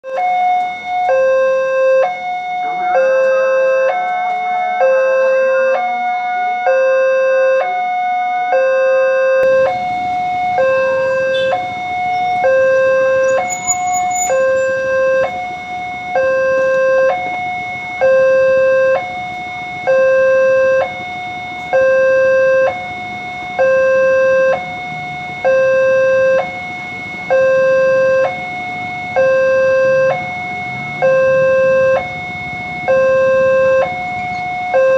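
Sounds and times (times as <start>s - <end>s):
level crossing two-tone alarm: 0.0s - 34.9s
steady rumbling noise: 9.4s - 18.0s.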